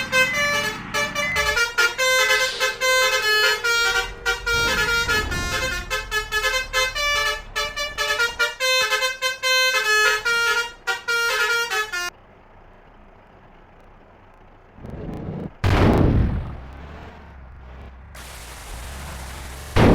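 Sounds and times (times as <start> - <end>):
multi-trumpet bus horn melody: 0.0 - 12.2
loud rushing noise burst: 1.4 - 8.8, 14.8 - 19.9.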